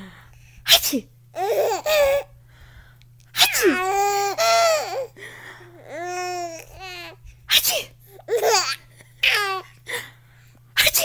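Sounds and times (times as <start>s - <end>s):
exaggerated sneezes: 3.4s - 3.8s, 7.5s - 8.0s, 10.8s - 11.0s
small child laughing: 8.3s - 9.7s.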